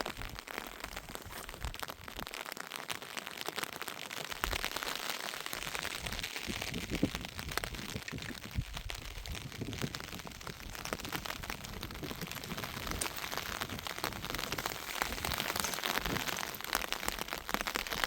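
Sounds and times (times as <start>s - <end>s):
heavy rain falling: 0.0s - 18.0s.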